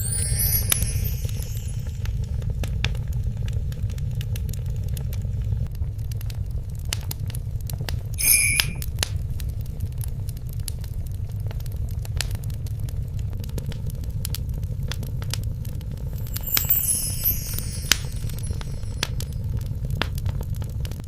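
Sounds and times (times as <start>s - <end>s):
high-pitched tone: 0.0s - 2.1s, 8.2s - 8.8s, 16.2s - 19.2s
wood fire crackling: 0.0s - 21.0s.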